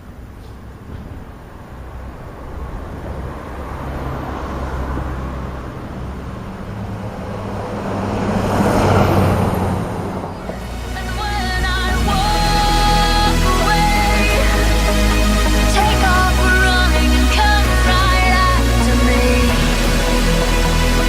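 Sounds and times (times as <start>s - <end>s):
vehicle driving past: 1.8s - 12.6s.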